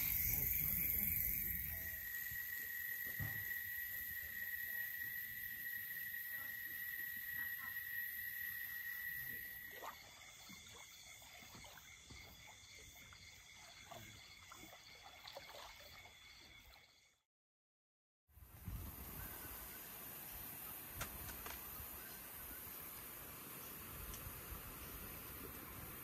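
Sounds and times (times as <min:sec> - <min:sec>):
chorus of frogs or insects: 0:00.0 - 0:17.2.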